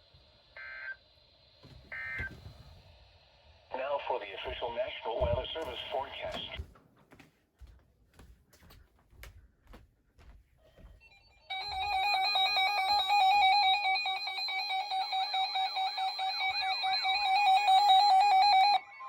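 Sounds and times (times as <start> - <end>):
warbling electronic alarm tone: 11.1 - 19.0.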